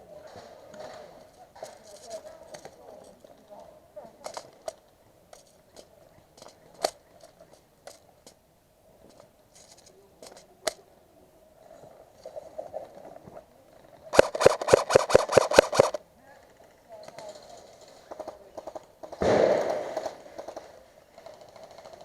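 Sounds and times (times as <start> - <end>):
sharp clicks: 14.1 - 16.0
airsoft gun fire: 14.2 - 16.0, 19.2 - 20.2.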